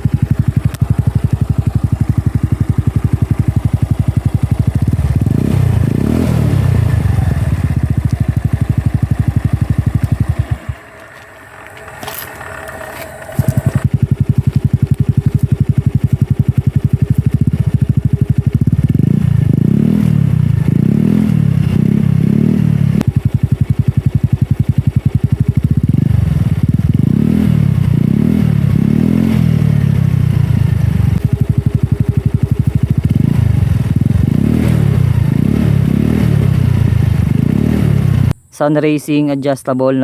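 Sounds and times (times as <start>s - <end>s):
motorcycle engine idling and revving: 0.0s - 39.3s.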